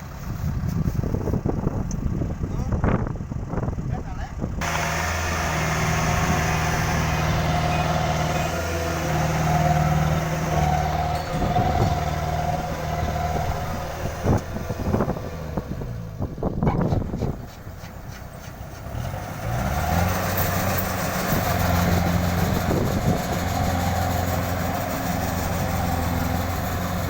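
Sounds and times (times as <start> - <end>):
combine harvester engine running: 0.0 - 27.0
high machinery whine: 4.6 - 14.5.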